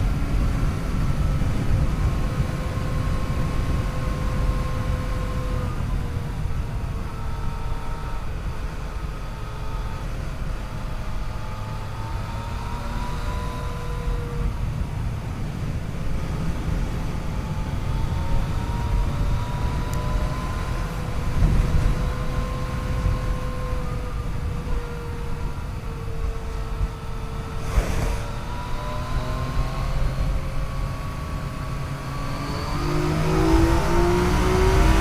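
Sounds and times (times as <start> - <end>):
motorcycle engine running: 0.0 - 35.0
wind noise: 0.0 - 35.0.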